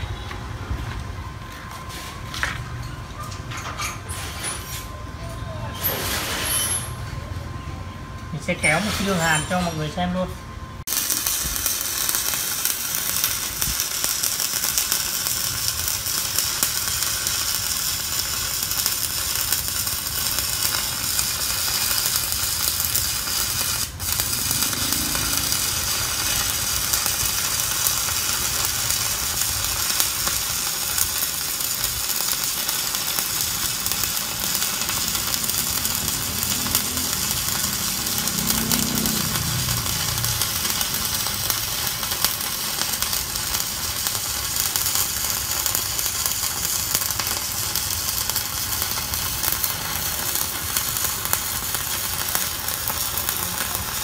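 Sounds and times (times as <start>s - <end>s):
welding arc crackling: 10.8s - 54.0s.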